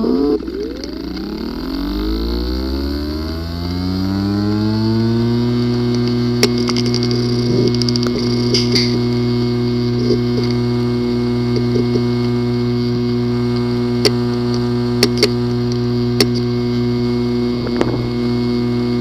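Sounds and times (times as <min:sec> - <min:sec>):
low electrical motor hum: 0:00.0 - 0:19.0
sharp clicks: 0:13.5 - 0:16.5.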